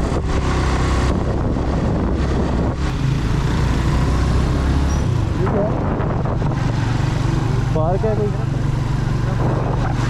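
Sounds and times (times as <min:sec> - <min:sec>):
wind noise: 0:00.0 - 0:07.8
motorcycle engine running: 0:00.0 - 0:10.0.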